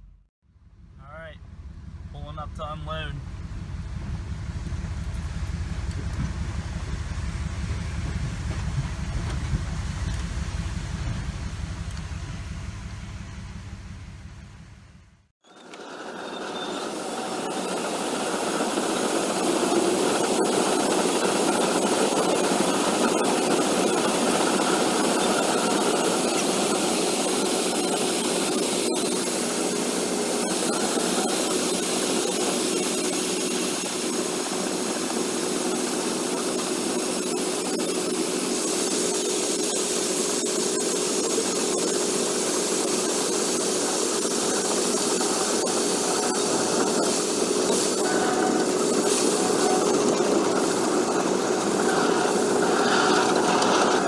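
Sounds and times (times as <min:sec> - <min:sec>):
steady hum: 0:00.0 - 0:54.0
corn rushing through machinery: 0:15.4 - 0:54.0.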